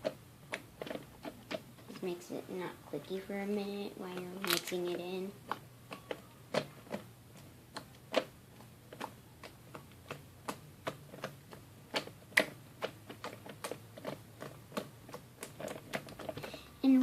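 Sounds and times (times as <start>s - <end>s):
slime clicking and popping: 4.1s - 16.5s.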